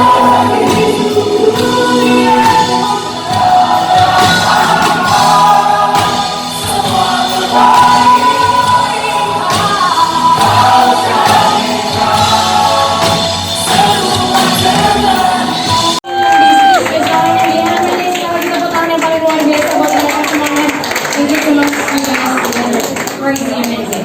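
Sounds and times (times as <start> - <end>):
choir singing gospel song: 0.0 - 16.0.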